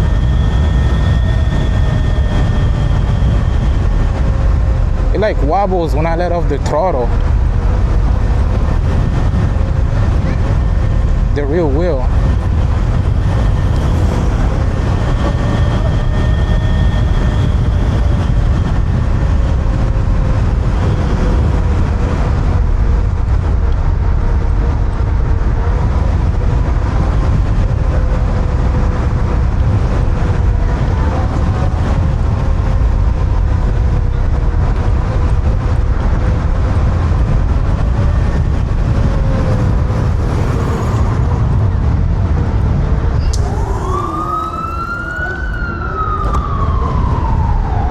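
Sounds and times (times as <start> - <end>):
wind rushing over microphone: 0.0 - 47.9
electric motor whine: 12.4 - 18.5, 43.3 - 46.4.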